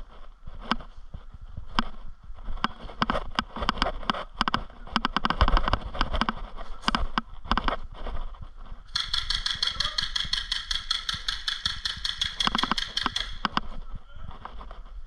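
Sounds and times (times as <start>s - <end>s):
airsoft full-auto burst: 8.9s - 13.4s.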